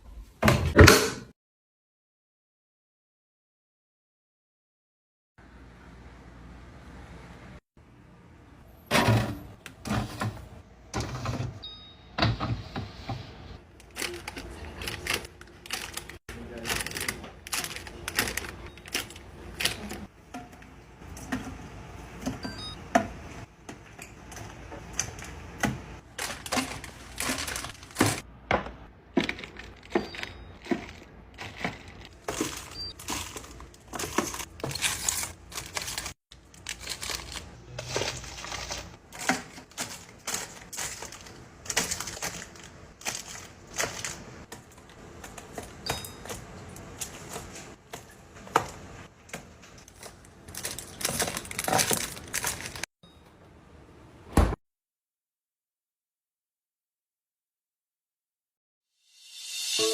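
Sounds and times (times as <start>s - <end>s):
containers clinking in refrigerator: 13.8s - 36.1s.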